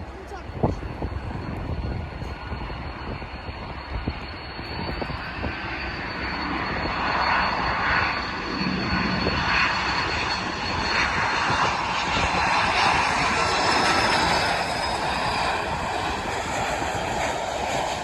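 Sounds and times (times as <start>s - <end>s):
jet engine high whine: 0.0s - 18.0s
jet engines rumbling: 0.0s - 18.0s.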